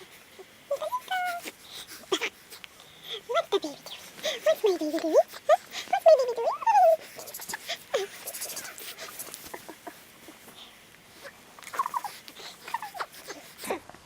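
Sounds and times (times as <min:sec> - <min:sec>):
baby cooing and squealing: 0:00.7 - 0:01.5, 0:11.7 - 0:13.4
small clicks and rustles: 0:07.0 - 0:14.0.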